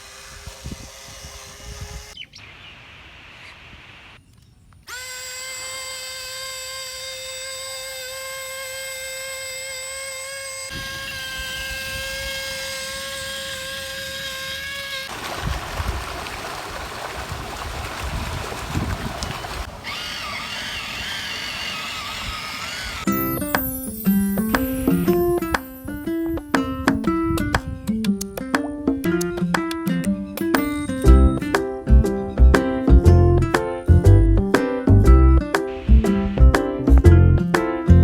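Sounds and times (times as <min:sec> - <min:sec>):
small motor whining: 0:00.0 - 0:02.2, 0:04.8 - 0:15.1, 0:19.2 - 0:23.3.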